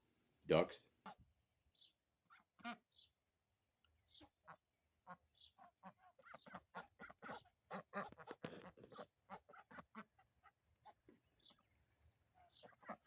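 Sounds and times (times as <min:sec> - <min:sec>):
ducks quacking: 0:02.3 - 0:03.1, 0:04.1 - 0:11.6, 0:12.3 - 0:13.0.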